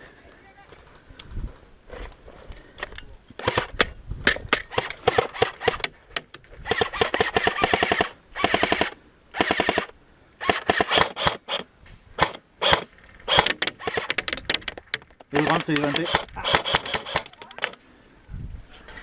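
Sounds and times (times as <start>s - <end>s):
airsoft gun shots: 15.4s - 17.3s.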